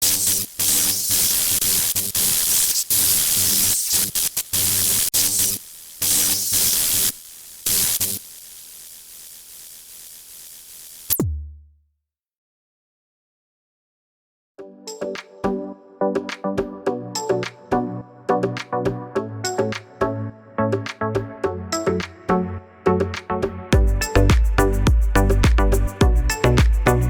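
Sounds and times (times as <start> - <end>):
white noise static bursts: 0.0 - 11.2
drum machine: 11.2 - 11.8, 18.4 - 20.1, 23.2 - 27.0.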